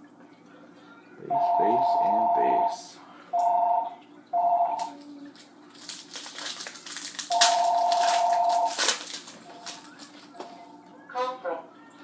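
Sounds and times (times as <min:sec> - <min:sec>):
foil wrapper crinkling and tearing: 0:05.3 - 0:10.4.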